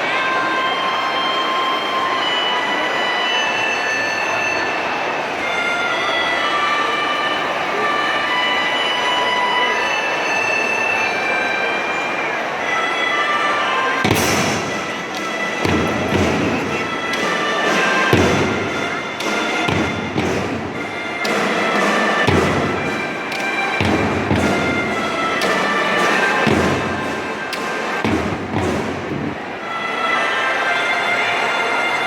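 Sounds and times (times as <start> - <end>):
bass drum strokes: 14.0 - 25.6, 26.4 - 29.6
cymbal crashes: 14.0 - 29.6
snare drums: 14.0 - 29.6.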